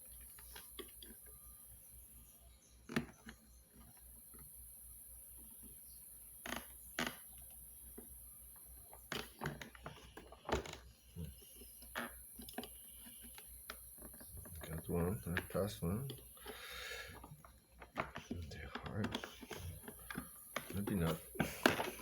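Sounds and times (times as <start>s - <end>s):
hard plastic parts clicking: 11.6s - 22.0s.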